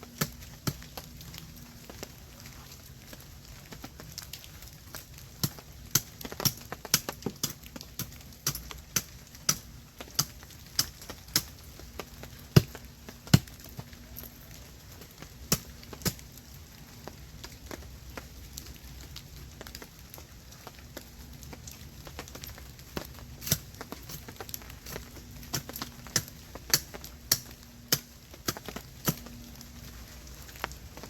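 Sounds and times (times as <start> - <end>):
wood fire crackling and popping: 0.0 - 31.0.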